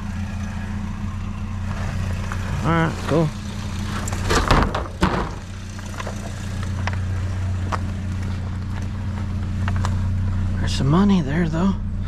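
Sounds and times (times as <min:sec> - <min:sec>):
vehicle engine idling: 0:00.0 - 0:12.0
sharp knocks: 0:04.3 - 0:05.5.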